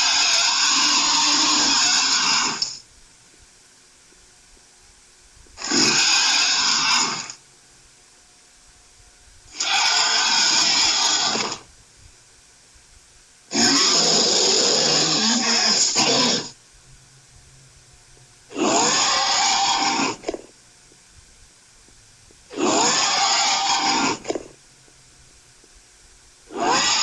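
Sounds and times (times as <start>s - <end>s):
monster growling and roaring: 0.0s - 2.7s, 5.6s - 7.3s, 9.6s - 11.6s, 13.5s - 16.5s, 18.5s - 20.4s, 22.5s - 24.5s, 26.5s - 27.0s.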